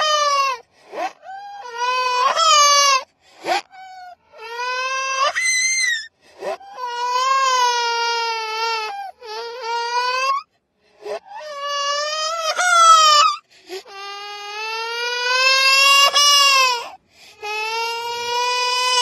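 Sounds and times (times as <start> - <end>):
small child crying: 0.0 - 19.0
gasping breaths: 3.1 - 4.0, 10.5 - 11.5.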